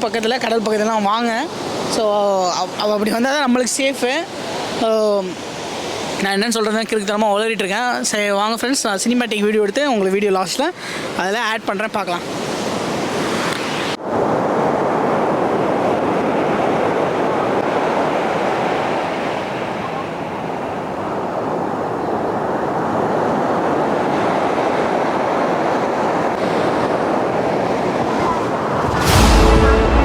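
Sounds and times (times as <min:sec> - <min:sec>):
sea surf breaking: 0:00.0 - 0:07.1, 0:10.7 - 0:30.0
wind on microphone: 0:12.5 - 0:30.0.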